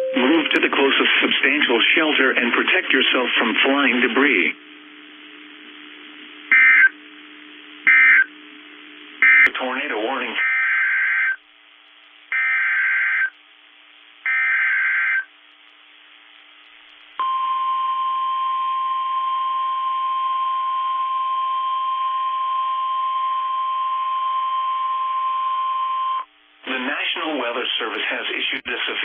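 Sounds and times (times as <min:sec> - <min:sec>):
steady alarm tone: 0:06.5 - 0:06.9, 0:07.9 - 0:08.3, 0:09.2 - 0:09.5, 0:10.4 - 0:11.4, 0:12.3 - 0:13.4, 0:14.2 - 0:15.3.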